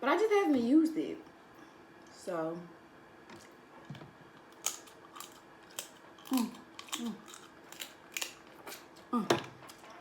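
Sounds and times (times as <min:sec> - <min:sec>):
crab shell cracking: 0:04.4 - 0:08.9.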